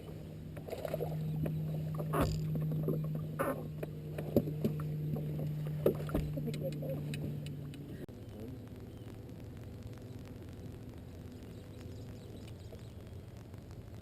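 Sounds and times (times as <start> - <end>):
boat motor humming: 0.0 - 13.6
water splashes: 0.0 - 14.0.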